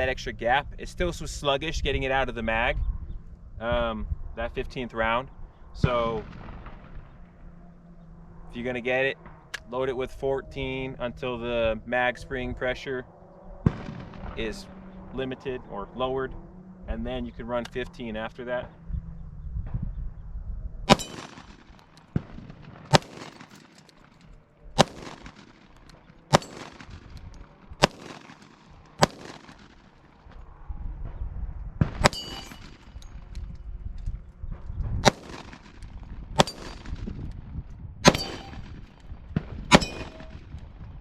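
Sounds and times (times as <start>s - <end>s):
pistol shots: 13.6s - 14.9s, 20.9s - 30.2s, 31.8s - 33.4s, 35.0s - 37.2s, 38.0s - 40.6s
bullets ringing off steel: 20.9s - 21.6s, 26.3s - 27.1s, 32.0s - 33.3s, 36.4s - 37.0s, 38.1s - 38.8s, 39.7s - 40.5s.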